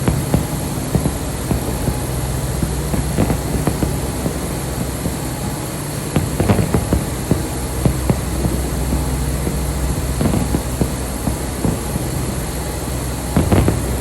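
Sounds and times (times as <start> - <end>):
fireworks popping and banging: 0.0 - 14.0
low rumble: 0.0 - 14.0.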